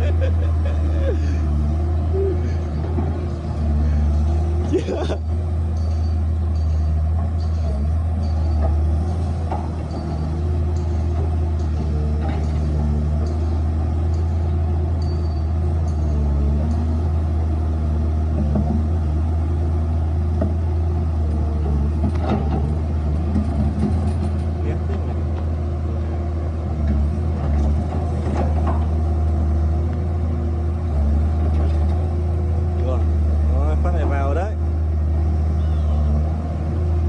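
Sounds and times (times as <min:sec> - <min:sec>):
diesel engine humming: 0:00.0 - 0:37.0.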